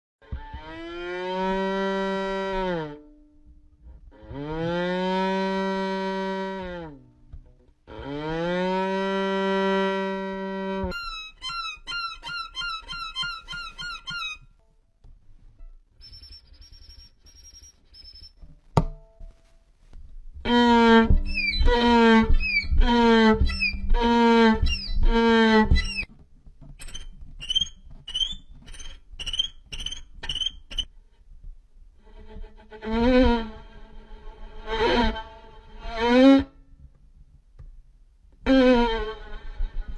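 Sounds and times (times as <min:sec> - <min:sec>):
violin bowed notes: 0:00.2 - 0:14.8, 0:20.4 - 0:26.2, 0:32.0 - 0:36.8, 0:38.4 - 0:39.9
high chirping violin notes: 0:08.7 - 0:14.6, 0:16.0 - 0:18.4, 0:20.5 - 0:26.1, 0:26.8 - 0:30.9.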